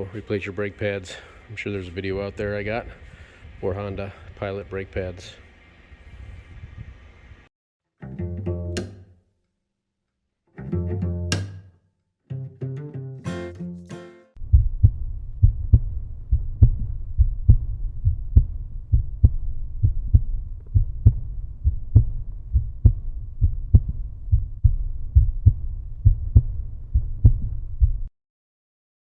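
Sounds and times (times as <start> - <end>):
bass-heavy beat: 14.4 - 28.1.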